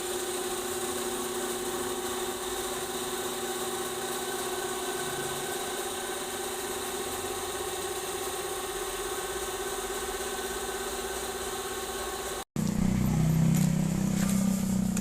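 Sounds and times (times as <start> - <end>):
diesel engine idling: 12.6 - 15.0
low hum: 12.6 - 15.0.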